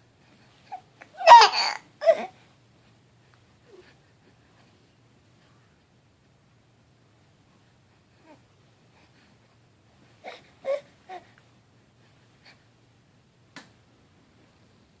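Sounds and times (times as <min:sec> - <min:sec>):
baby vocalizing: 0:01.2 - 0:02.3.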